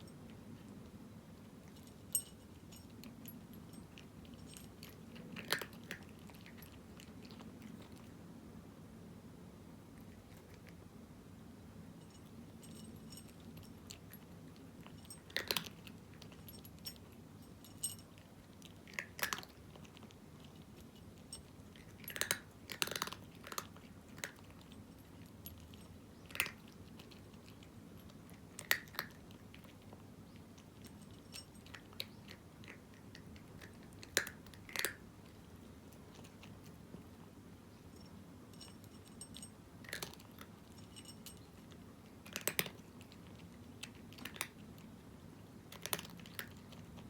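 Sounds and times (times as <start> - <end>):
cat crunching dry kibble: 0.0 - 8.2, 9.9 - 10.8, 12.0 - 37.4, 38.1 - 47.0.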